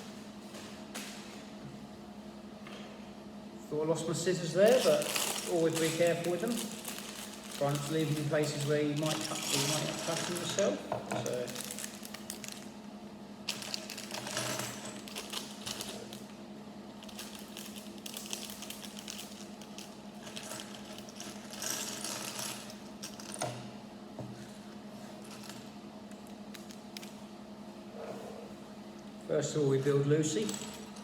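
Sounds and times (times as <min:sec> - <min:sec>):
plastic bag rustling: 0:04.6 - 0:12.7, 0:13.5 - 0:14.4.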